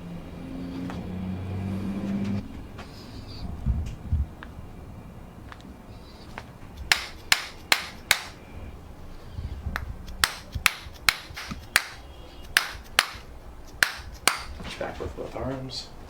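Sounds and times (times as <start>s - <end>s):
sharp knocks: 6.8s - 8.4s, 9.8s - 14.7s.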